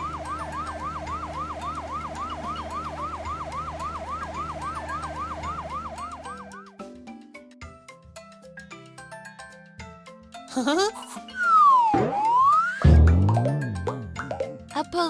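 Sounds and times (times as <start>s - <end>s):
cartoon siren yelping: 0.0s - 6.7s, 10.8s - 13.3s.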